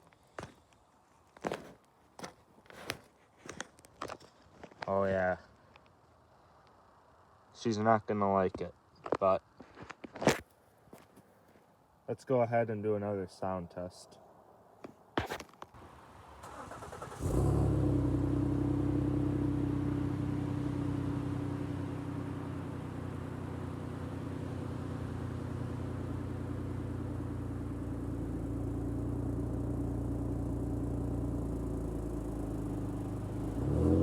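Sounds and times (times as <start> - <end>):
car engine starting and idling: 16.2 - 34.0.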